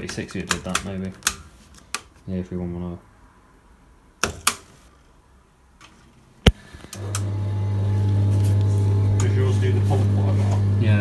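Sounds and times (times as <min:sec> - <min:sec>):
drain pump mains hum: 0:06.4 - 0:11.0.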